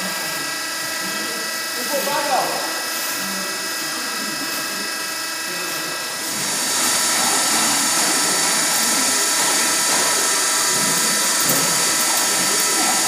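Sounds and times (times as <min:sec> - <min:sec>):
baling press machine whine: 0:00.0 - 0:13.0.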